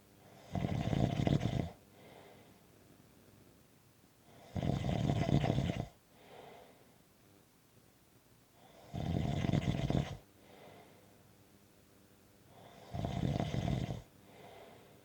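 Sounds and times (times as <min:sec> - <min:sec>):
faint breath: 0:01.9 - 0:02.7, 0:06.1 - 0:07.0, 0:10.3 - 0:11.3, 0:14.2 - 0:15.0
person snoring: 0:12.6 - 0:14.1.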